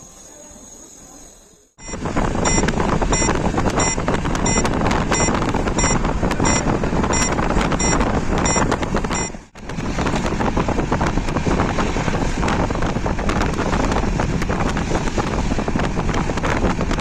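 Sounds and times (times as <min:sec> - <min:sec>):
train wheel and wind rush: 0:00.0 - 0:17.0
short high electronic beep: 0:01.8 - 0:09.4.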